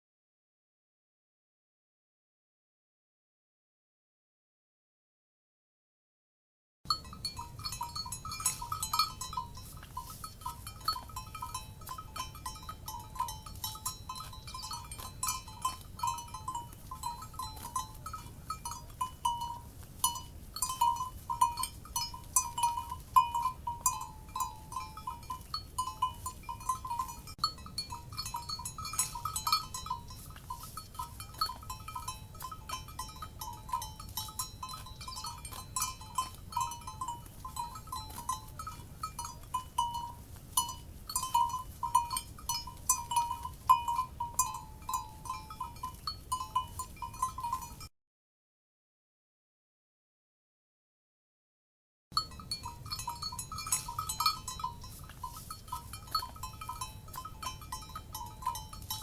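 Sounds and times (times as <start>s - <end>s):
cowbells clanking: 6.9s - 47.9s, 52.2s - 59.0s.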